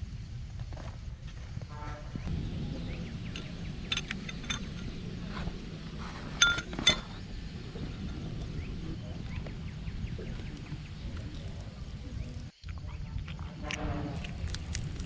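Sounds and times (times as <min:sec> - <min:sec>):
low steady rumble: 0:00.0 - 0:15.0
light clinks with brief ring: 0:03.2 - 0:07.2.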